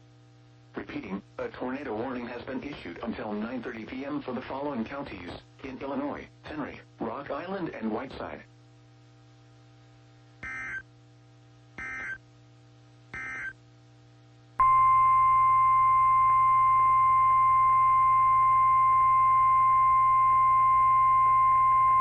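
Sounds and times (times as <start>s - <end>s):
steady warning alarm tone: 10.4s - 10.8s, 11.8s - 12.2s, 13.2s - 13.6s, 14.6s - 22.0s.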